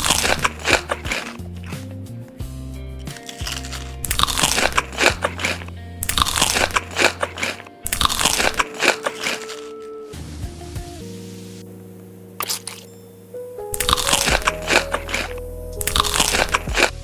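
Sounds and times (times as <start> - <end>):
crunching crisp food: 0.0 - 1.8, 3.0 - 10.1, 12.4 - 12.9, 13.7 - 17.0
background music: 0.0 - 17.0.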